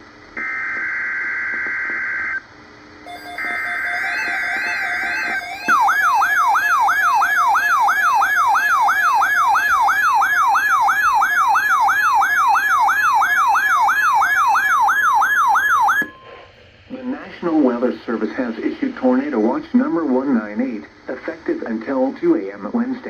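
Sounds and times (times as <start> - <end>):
electronic alert tone sweeping: 3.1 - 8.8
high digital data tone: 3.1 - 11.8.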